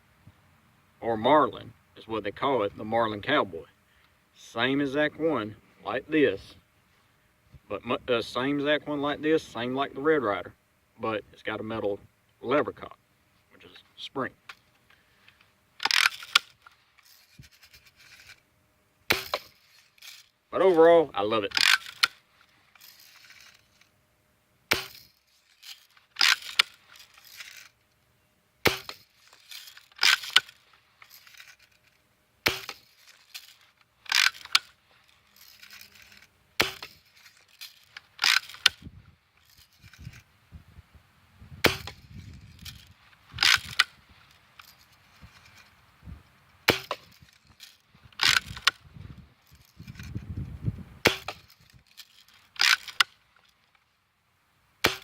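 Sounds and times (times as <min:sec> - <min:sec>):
bb gun being cocked: 0:15.8 - 0:16.6, 0:21.5 - 0:22.2, 0:26.2 - 0:27.7, 0:28.7 - 0:31.5, 0:32.5 - 0:34.8, 0:38.2 - 0:38.8, 0:43.4 - 0:44.0, 0:48.2 - 0:48.8, 0:52.5 - 0:53.2
bb gun firing cracks: 0:19.1 - 0:19.6, 0:24.7 - 0:25.1, 0:28.6 - 0:29.1, 0:32.4 - 0:32.8, 0:35.6 - 0:37.0, 0:41.6 - 0:42.0, 0:43.3 - 0:44.0, 0:46.6 - 0:47.2, 0:51.0 - 0:51.5, 0:54.8 - 0:55.0.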